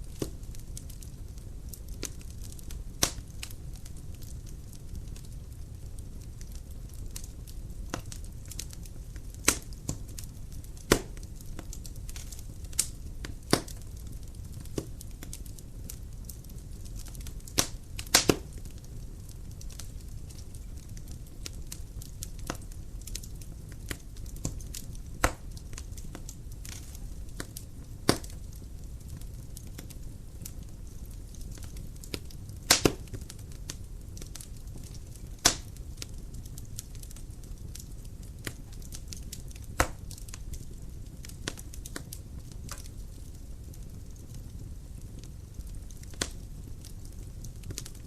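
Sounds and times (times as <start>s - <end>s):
fire flame rumble: 0.0s - 48.0s
firewood crackling: 0.0s - 48.0s
sharp pops of burning wood: 0.0s - 48.0s.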